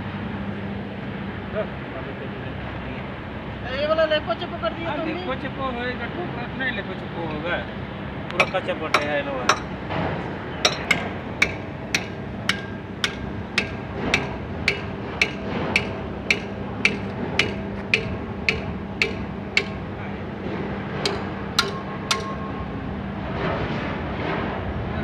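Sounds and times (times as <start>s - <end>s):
low steady hum: 8.2s - 23.4s
hammer blows on steel: 8.4s - 9.8s, 10.7s - 20.2s, 21.0s - 22.6s.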